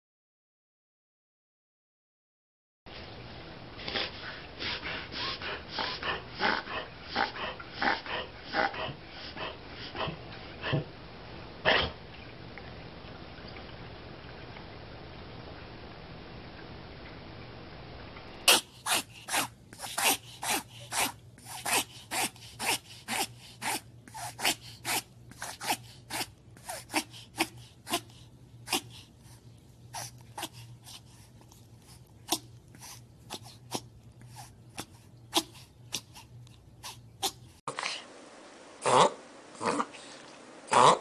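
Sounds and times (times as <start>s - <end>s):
dog reverse sneezing: 18.5s - 29.1s, 29.9s - 30.6s, 32.3s - 37.8s
low hiss: 26.3s - 41.0s.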